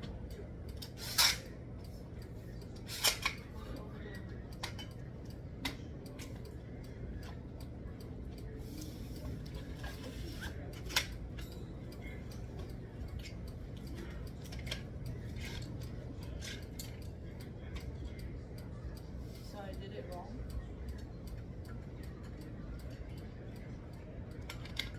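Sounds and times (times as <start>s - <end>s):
parts clicking during assembly: 2.8s - 3.4s, 9.2s - 11.5s.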